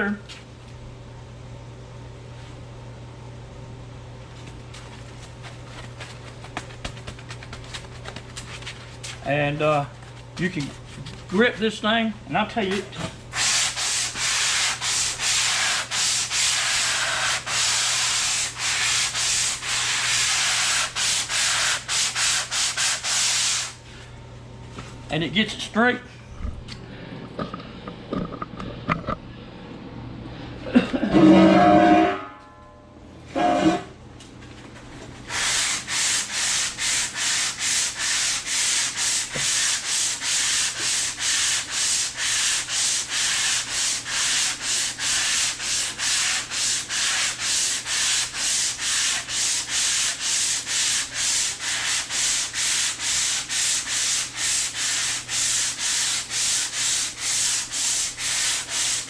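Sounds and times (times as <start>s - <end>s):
sandpaper strokes on car panel: 13.3s - 23.8s, 35.3s - 59.0s.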